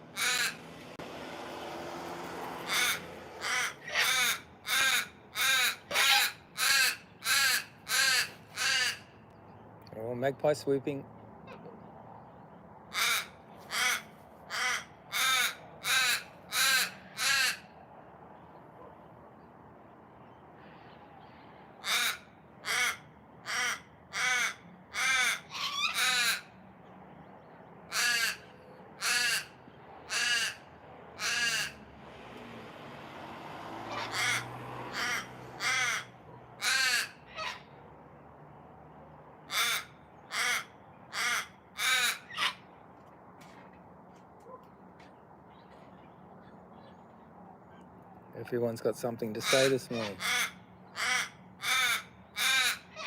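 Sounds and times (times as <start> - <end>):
raven cawing: 0.0 - 0.7, 2.6 - 9.2, 12.9 - 17.8, 21.7 - 26.6, 27.9 - 31.8, 33.8 - 37.8, 39.4 - 42.7, 49.4 - 53.0.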